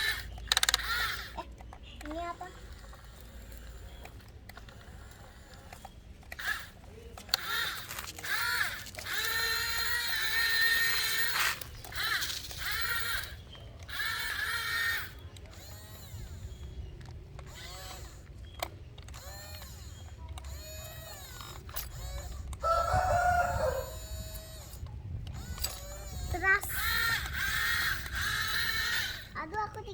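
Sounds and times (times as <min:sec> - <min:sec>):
toy electric motors whining: 0:00.0 - 0:29.9.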